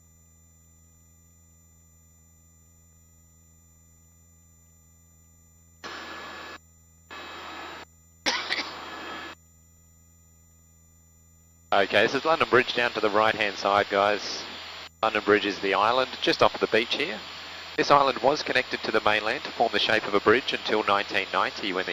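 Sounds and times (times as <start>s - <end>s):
microphone hiss bursts: 5.8s - 7.8s, 8.5s - 9.4s, 11.7s - 21.9s
intercom hum: 5.8s - 9.4s, 11.7s - 21.9s.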